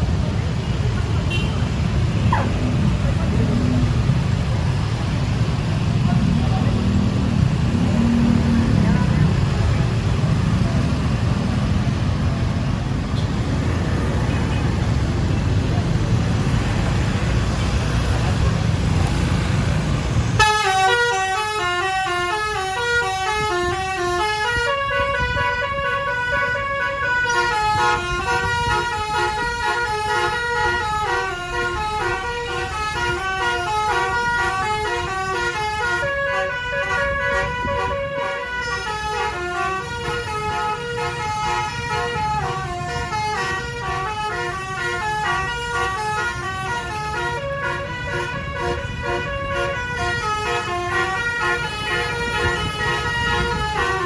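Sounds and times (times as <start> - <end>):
road and engine rumble: 0.0 - 54.0
musical bus horn melody: 20.4 - 54.0.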